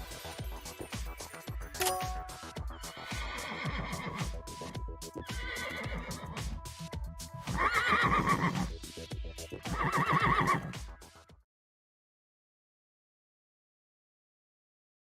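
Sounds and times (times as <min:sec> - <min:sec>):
background music with beat: 0:00.0 - 0:11.4
horse whinnying: 0:02.9 - 0:04.3, 0:05.2 - 0:06.4, 0:07.5 - 0:08.7, 0:09.7 - 0:10.8.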